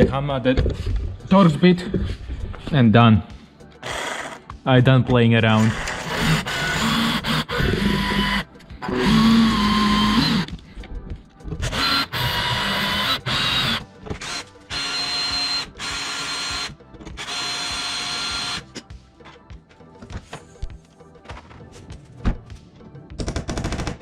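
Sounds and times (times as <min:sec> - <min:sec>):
electric drill whining: 0:03.8 - 0:04.4, 0:05.6 - 0:10.6, 0:11.6 - 0:18.7.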